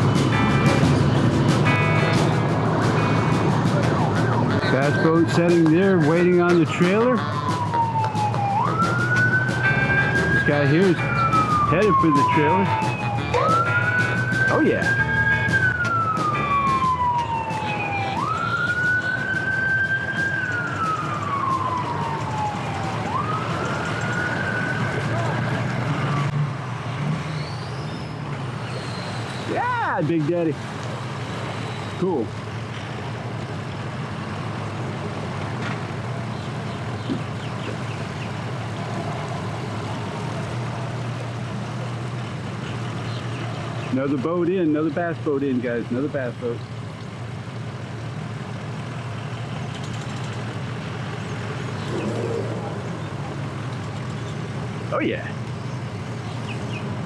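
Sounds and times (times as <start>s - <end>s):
motor engine running: 0.0s - 12.2s
emergency siren wailing: 0.0s - 26.7s, 34.3s - 43.0s, 51.4s - 53.9s.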